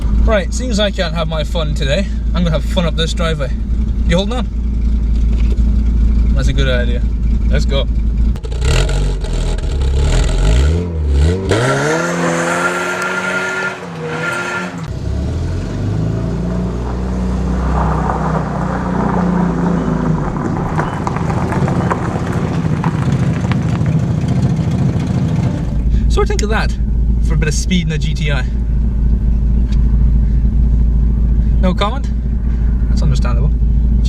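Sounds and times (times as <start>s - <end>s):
car engine accelerating hard: 3.2s - 27.7s.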